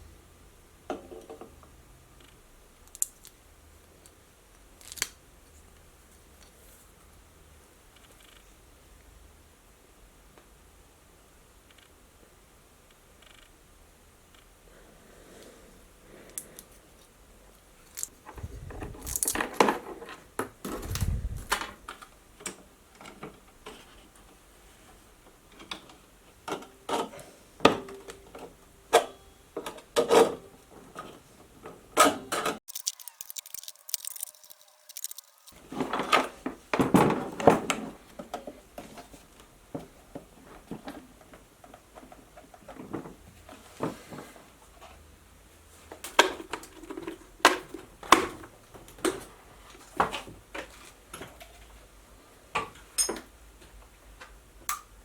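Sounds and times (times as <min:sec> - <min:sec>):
bandsaw parts clicking and rattling: 0:17.9 - 0:19.6, 0:32.7 - 0:35.6.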